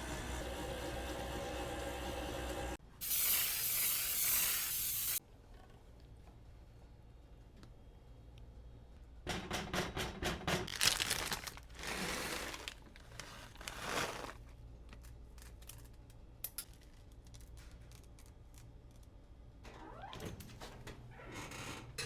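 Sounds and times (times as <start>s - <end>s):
crinkling rustling handling noise: 10.7s - 19.0s.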